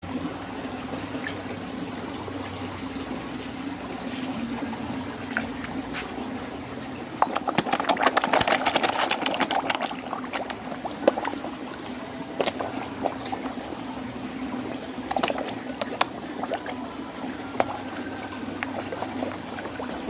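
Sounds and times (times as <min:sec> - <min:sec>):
trickling water: 0:00.0 - 0:20.0
fish gulping at water surface: 0:07.0 - 0:20.0.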